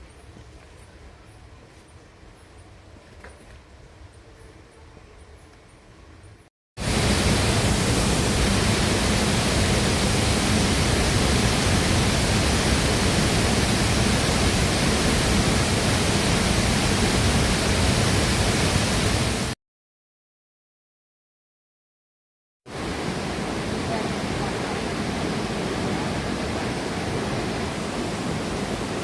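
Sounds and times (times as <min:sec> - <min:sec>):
waterfall rushing: 0:06.8 - 0:19.6, 0:22.7 - 0:29.0.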